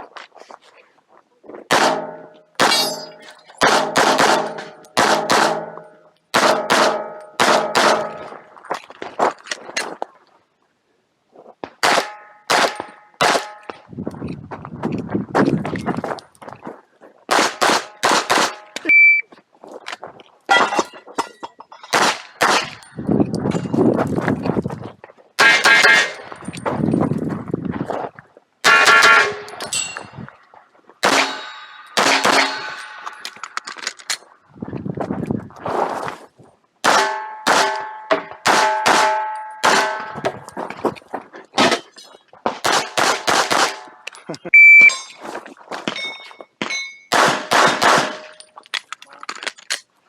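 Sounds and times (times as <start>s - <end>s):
pistol shots: 1.7s - 5.7s, 6.4s - 8.2s, 11.8s - 13.6s, 17.3s - 18.7s, 21.9s - 22.8s, 31.0s - 33.0s, 36.8s - 40.2s, 42.6s - 43.9s, 47.1s - 48.4s
steel targets ringing: 1.8s - 8.2s, 25.4s - 26.4s, 28.6s - 30.1s, 31.0s - 33.3s, 36.9s - 40.3s, 44.7s - 45.2s.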